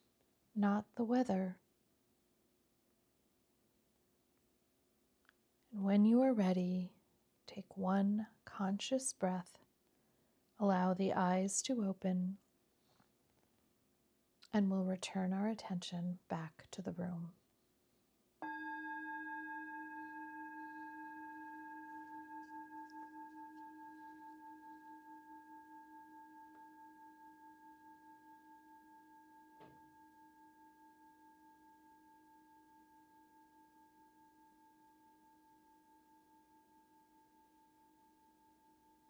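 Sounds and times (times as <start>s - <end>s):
singing bowl ringing: 18.4s - 39.0s.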